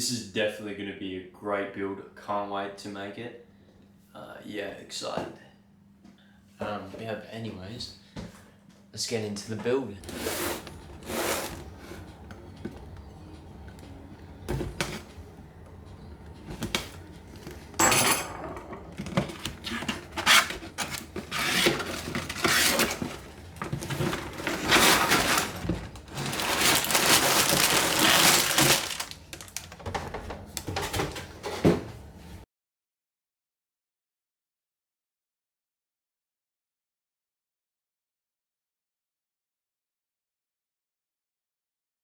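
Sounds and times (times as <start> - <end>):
plastic pieces clattering: 18.8 - 31.0.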